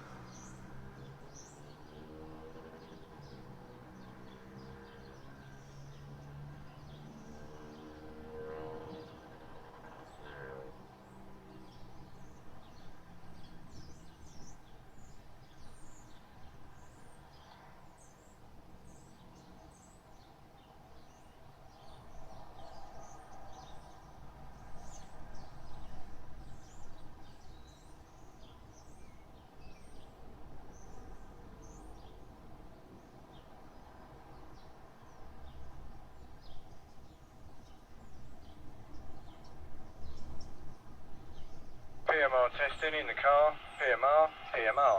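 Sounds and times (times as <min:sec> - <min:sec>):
small birds chirping: 0:00.3 - 0:02.1, 0:11.1 - 0:44.9.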